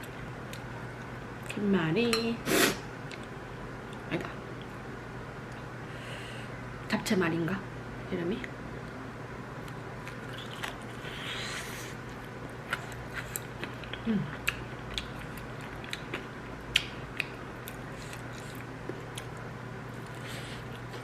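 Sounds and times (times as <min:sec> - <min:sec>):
steady low hum: 0:00.0 - 0:21.0
person chewing crunchy food: 0:09.6 - 0:21.0.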